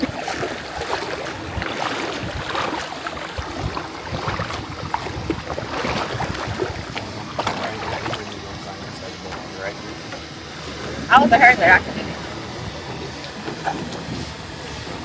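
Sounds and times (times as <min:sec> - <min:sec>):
sea water splashing: 0:00.0 - 0:15.0.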